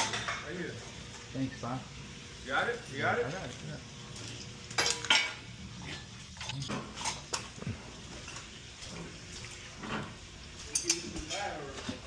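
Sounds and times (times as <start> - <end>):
metal pipe fittings clinking: 10.6 - 11.4.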